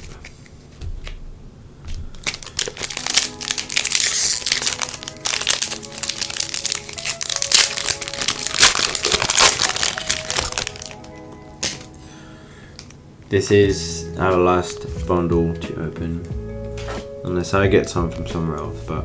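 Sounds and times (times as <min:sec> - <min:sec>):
background music: 0:00.8 - 0:19.0
foil wrapper crinkling: 0:02.1 - 0:12.0.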